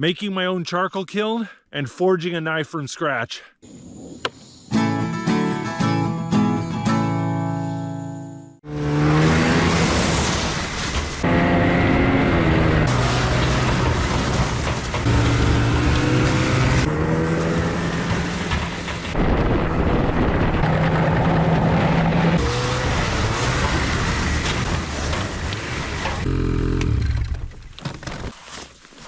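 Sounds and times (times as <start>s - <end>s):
vehicle engine running: 11.2s - 19.2s.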